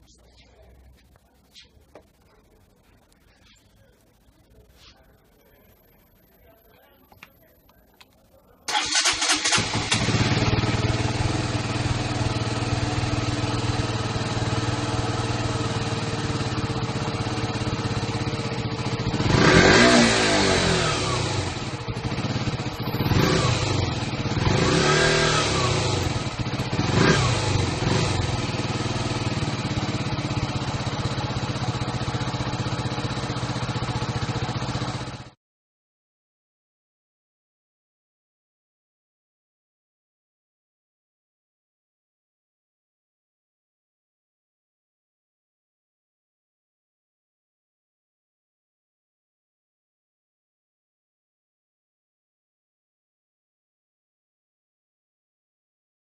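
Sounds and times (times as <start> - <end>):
motorcycle engine idling and revving: 8.7 - 35.4
motorcycle engine starting: 8.7 - 35.4.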